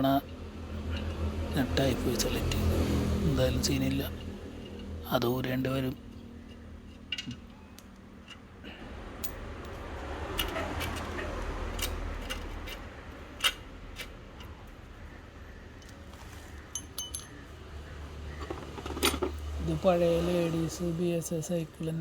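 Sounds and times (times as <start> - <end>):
metallic clicks of tools: 10.3 - 14.6
short metallic rings: 16.7 - 17.4.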